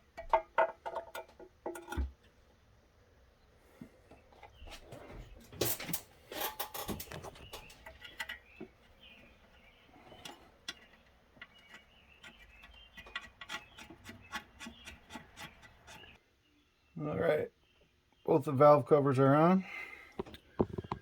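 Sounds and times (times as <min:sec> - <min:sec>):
metal parts and hand tools clicking: 0:05.4 - 0:16.2.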